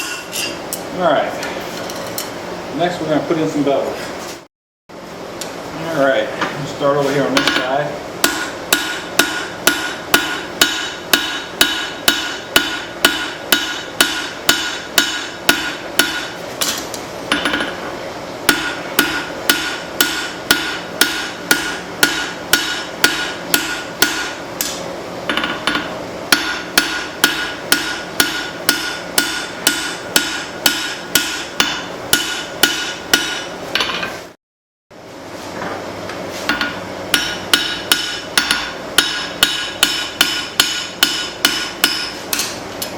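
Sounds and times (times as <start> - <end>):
hammer ringing on anvil: 0.0 - 0.6, 7.4 - 16.4, 18.5 - 33.5, 36.5 - 42.9.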